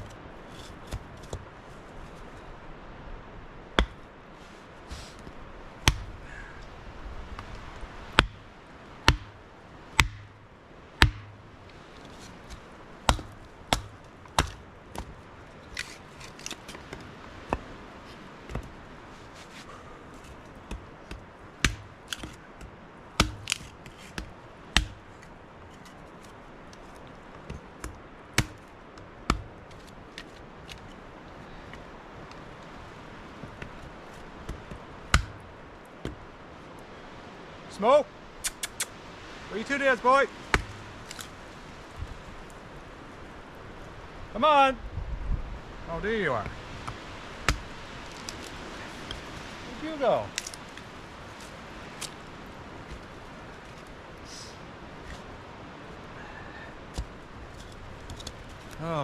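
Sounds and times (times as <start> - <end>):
chopping tool splitting wood: 3.8 - 4.0, 5.8 - 6.2, 8.2 - 8.4, 9.0 - 9.4, 10.0 - 10.4, 11.0 - 11.4, 12.5 - 15.1, 20.7 - 25.0, 27.8 - 28.6, 29.3 - 29.9, 34.5 - 35.4, 40.5 - 41.3, 46.8 - 49.2.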